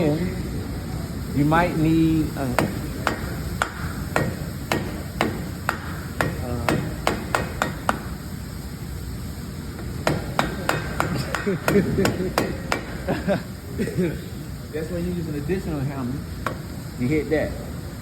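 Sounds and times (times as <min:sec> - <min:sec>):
hammer blows on metal: 0:02.3 - 0:08.3, 0:10.0 - 0:13.1.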